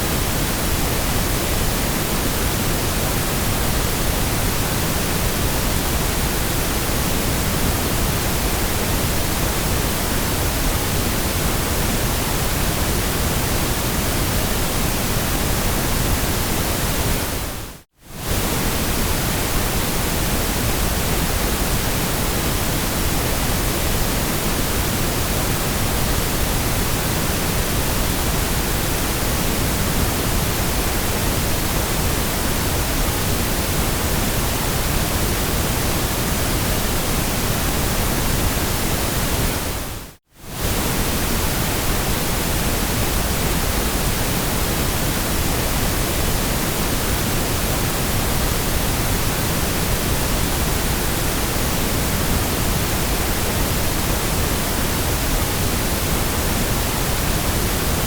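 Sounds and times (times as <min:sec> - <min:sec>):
steady white noise: 0:00.0 - 0:58.0.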